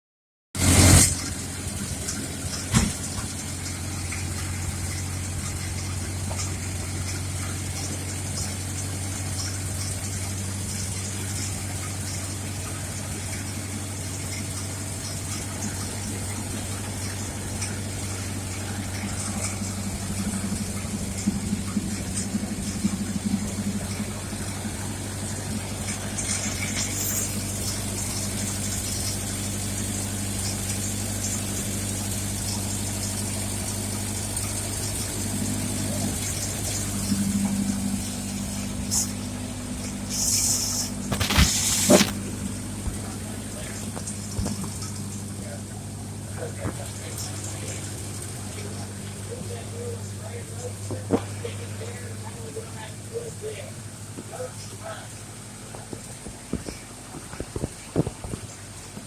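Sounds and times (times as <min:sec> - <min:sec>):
car engine idling: 0:00.6 - 0:59.0.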